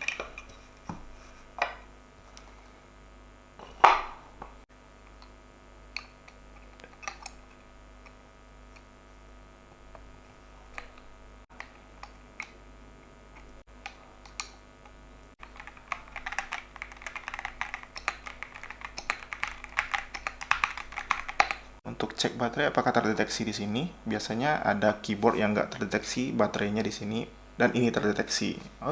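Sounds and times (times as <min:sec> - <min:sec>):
mechanical keyboard typing: 0:15.4 - 0:21.6.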